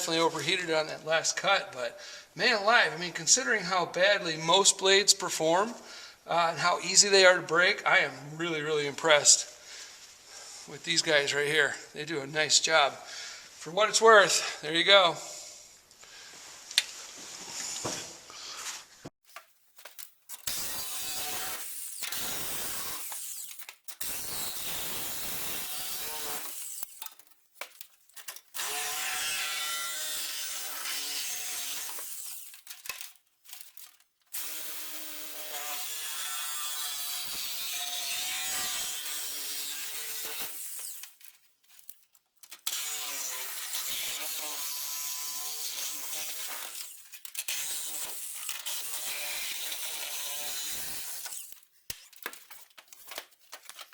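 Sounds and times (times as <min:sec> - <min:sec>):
reciprocating saw cutting sheet metal: 0:20.4 - 0:27.1, 0:28.6 - 0:32.6, 0:34.4 - 0:41.1, 0:42.6 - 0:51.6.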